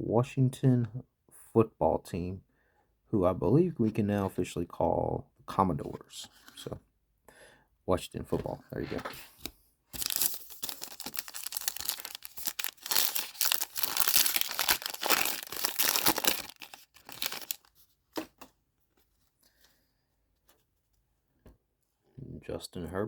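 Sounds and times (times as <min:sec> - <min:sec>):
card pack wrapper tearing: 0:10.0 - 0:17.7
wrapper crinkling: 0:10.0 - 0:17.7.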